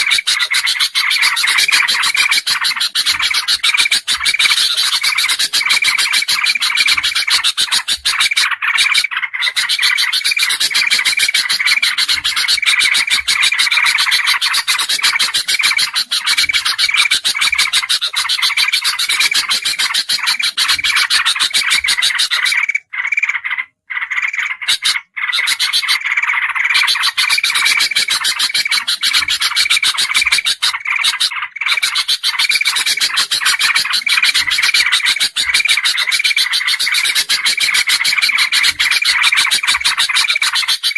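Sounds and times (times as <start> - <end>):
bulbul calls chirping: 0.0 - 40.9.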